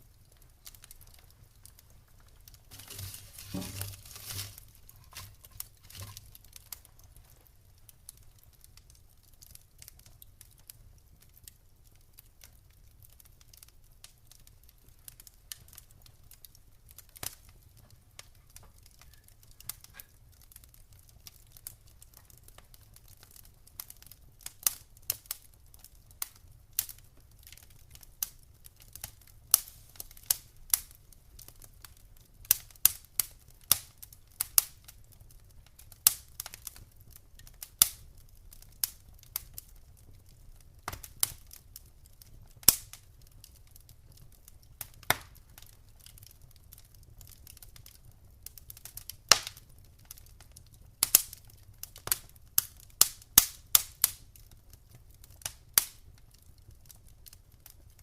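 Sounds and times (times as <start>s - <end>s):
wood fire crackling: 0.0s - 58.0s
sharp pops of fire: 0.4s - 6.9s, 29.0s - 31.7s, 32.4s - 39.7s, 40.3s - 46.2s, 48.4s - 50.2s, 51.0s - 54.2s, 55.4s - 56.1s.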